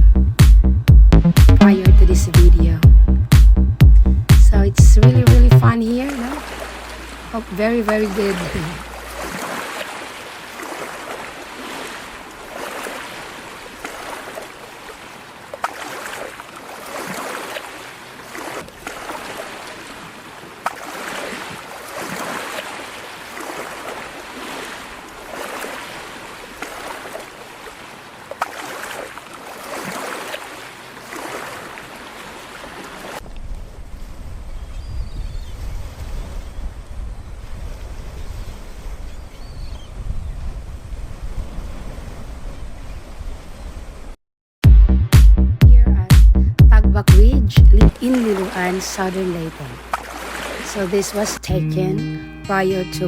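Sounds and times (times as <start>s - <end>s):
water washing and splashing: 2.9s - 33.8s, 47.1s - 51.4s.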